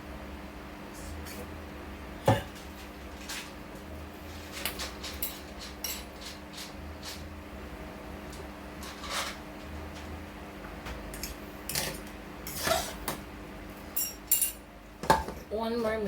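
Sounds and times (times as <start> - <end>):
steady low hum: 0.0 - 16.0
pots and utensils clinking: 2.2 - 3.6, 4.4 - 7.3, 13.9 - 15.4.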